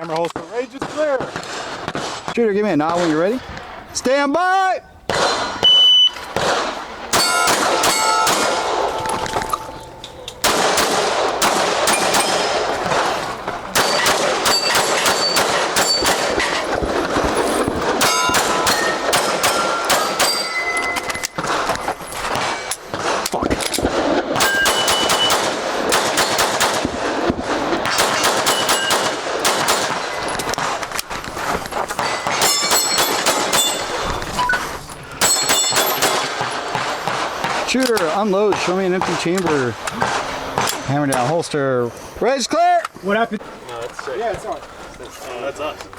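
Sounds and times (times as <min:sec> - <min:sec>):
pistol shots: 0:05.1 - 0:31.3, 0:32.0 - 0:34.3, 0:35.2 - 0:40.9
steel targets ringing: 0:07.1 - 0:10.4, 0:11.8 - 0:16.7, 0:17.4 - 0:22.8, 0:24.4 - 0:25.5, 0:28.2 - 0:29.2, 0:32.0 - 0:34.6, 0:35.2 - 0:36.6.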